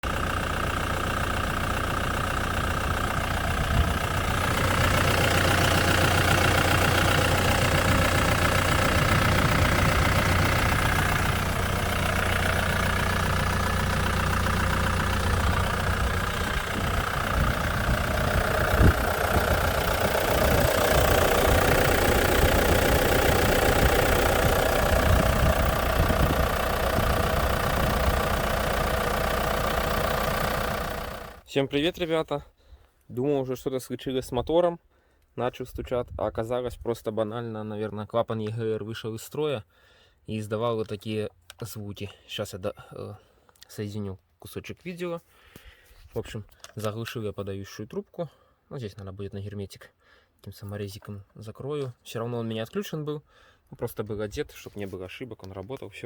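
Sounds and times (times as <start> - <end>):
car engine idling: 0.0 - 31.4.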